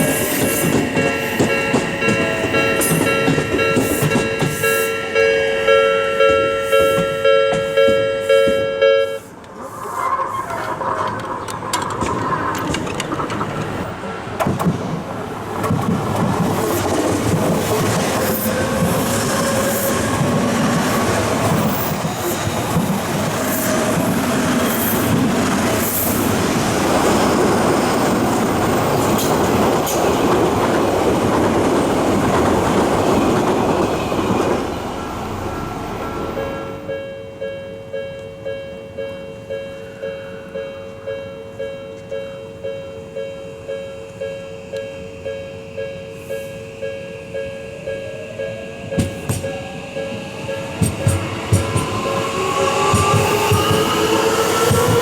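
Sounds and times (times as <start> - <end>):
train rumble: 0.0 - 37.0, 44.9 - 55.0
level crossing bell clanging: 0.7 - 9.3
wheels clattering over rail joints: 9.4 - 19.0.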